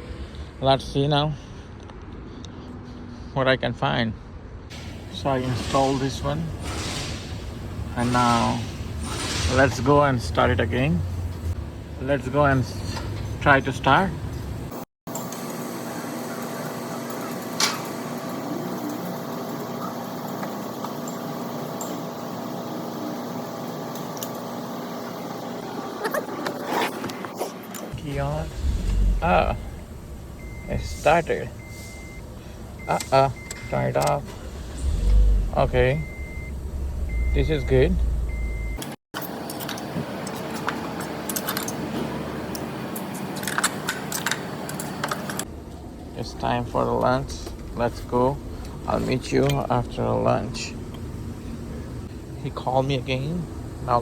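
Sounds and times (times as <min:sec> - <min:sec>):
mechanical hum with faint tones: 0:00.0 - 0:54.0
low rumble: 0:28.0 - 0:31.7, 0:34.7 - 0:38.8.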